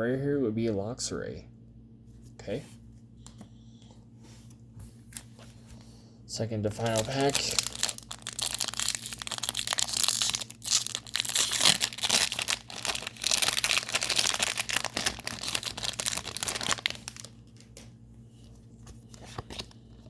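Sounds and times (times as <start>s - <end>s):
foil wrapper tearing and crinkling: 6.8s - 17.3s.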